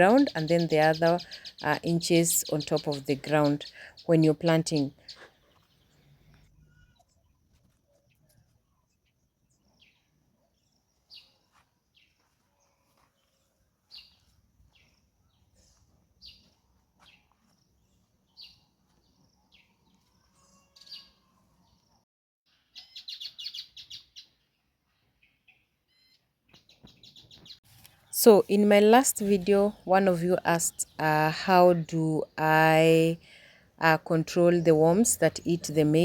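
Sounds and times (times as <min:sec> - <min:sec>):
fast bird chirps: 0:00.1 - 0:05.9, 0:22.7 - 0:24.4.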